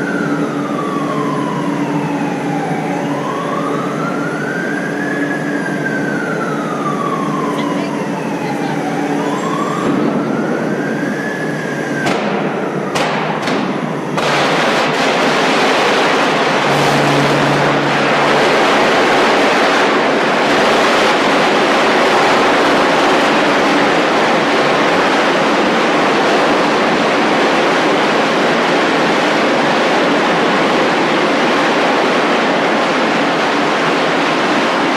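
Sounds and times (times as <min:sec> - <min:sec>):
arc furnace crackling roar: 0:00.0 - 0:34.9
sharp cracks: 0:12.0 - 0:16.7.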